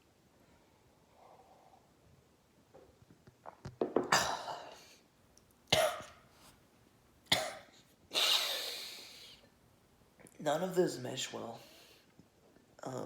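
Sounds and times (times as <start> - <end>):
man coughing: 4.1 - 4.7.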